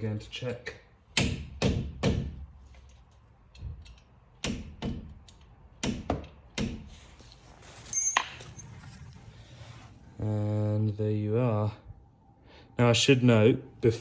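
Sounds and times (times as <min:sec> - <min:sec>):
sharp metallic clink: 0:07.9 - 0:08.6.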